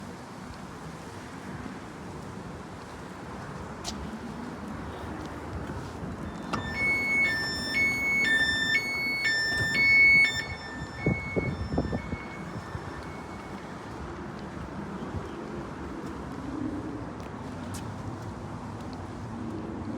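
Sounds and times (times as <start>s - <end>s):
two-tone warning alarm: 6.2s - 14.6s.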